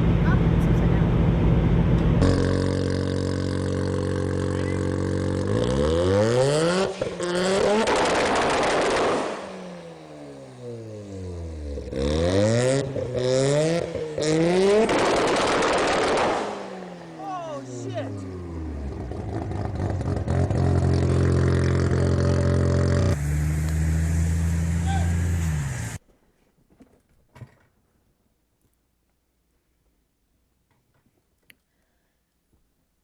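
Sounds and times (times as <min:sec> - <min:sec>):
car engine idling and revving: 0:00.0 - 0:26.0.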